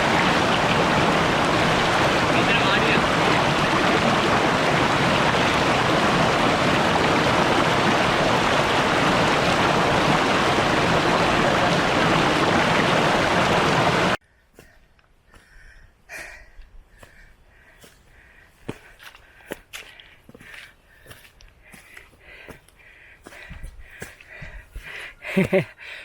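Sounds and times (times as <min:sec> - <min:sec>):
stream water rushing: 0:00.0 - 0:14.2.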